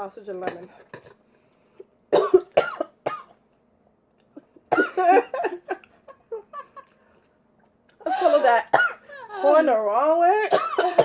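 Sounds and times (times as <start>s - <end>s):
woman coughing: 2.1s - 3.4s, 4.7s - 5.7s, 8.1s - 9.1s, 10.4s - 11.0s.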